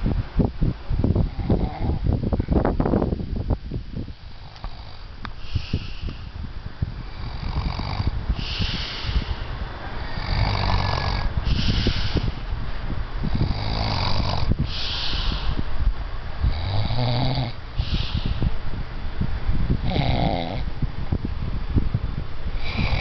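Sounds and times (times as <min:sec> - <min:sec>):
person snoring heavily: 0:01.2 - 0:02.0, 0:04.3 - 0:06.3, 0:07.0 - 0:12.4, 0:13.3 - 0:15.6, 0:16.5 - 0:18.5, 0:19.8 - 0:20.7, 0:22.6 - 0:23.0.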